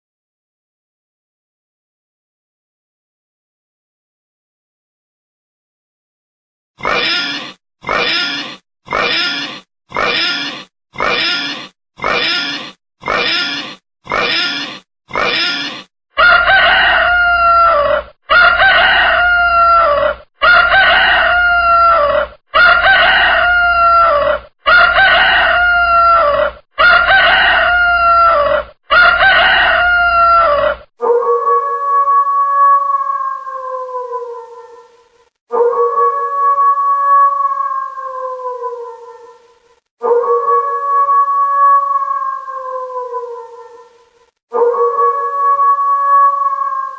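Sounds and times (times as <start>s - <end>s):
pig grunting: 6.8s - 15.9s
rooster crowing: 16.2s - 30.8s
wolf howling: 16.2s - 46.9s.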